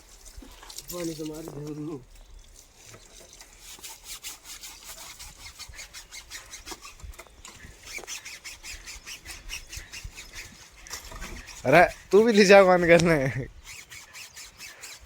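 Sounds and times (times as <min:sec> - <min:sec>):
scrubbing motorcycle tyre: 0:07.8 - 0:15.0.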